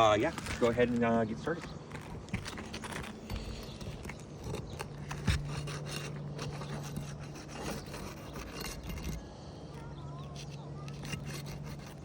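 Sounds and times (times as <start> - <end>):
hand tool scraping roof shingle: 0.0 - 9.3, 10.2 - 12.0.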